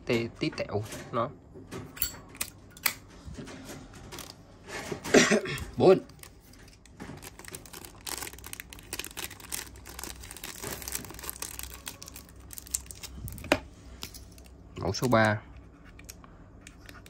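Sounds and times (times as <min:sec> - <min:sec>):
packaging crinkling: 0:05.8 - 0:15.3.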